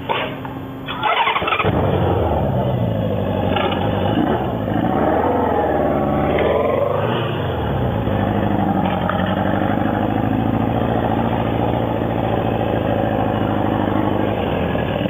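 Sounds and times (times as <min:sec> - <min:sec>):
motorcycle engine revving: 0:00.8 - 0:15.0.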